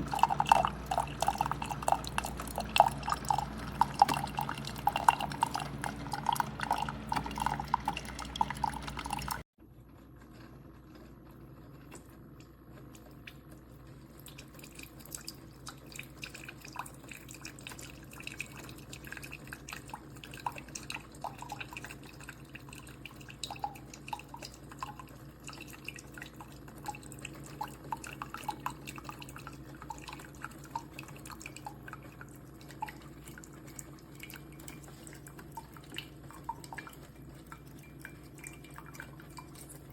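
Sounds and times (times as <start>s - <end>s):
coffee dripping: 0.0s - 9.4s, 14.1s - 39.9s
coffee stream into cup: 0.0s - 9.4s, 14.3s - 39.9s
low steady hum: 0.0s - 9.8s.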